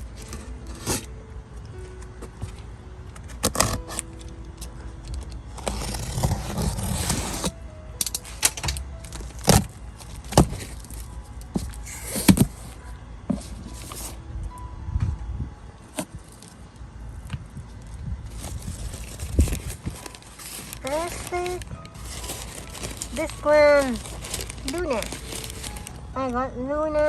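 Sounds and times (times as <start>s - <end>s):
packaging rustling and crinkling: 5.1s - 14.2s, 18.2s - 26.1s.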